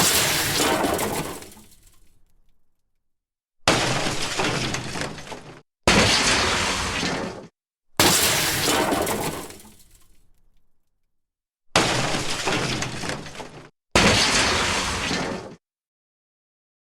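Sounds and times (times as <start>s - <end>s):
crash sound effects smashing: 0.0s - 1.8s, 8.0s - 10.0s.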